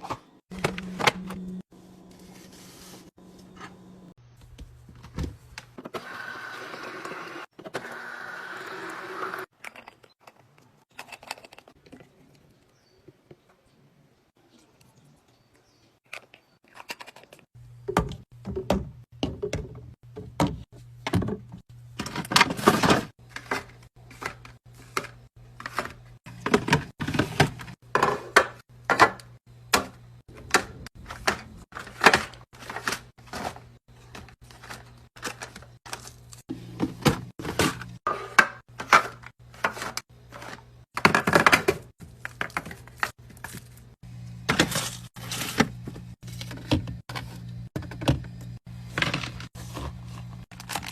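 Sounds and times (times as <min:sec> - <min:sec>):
packaging clicking and knocking: 0:30.4 - 0:43.7, 0:50.5 - 0:50.9.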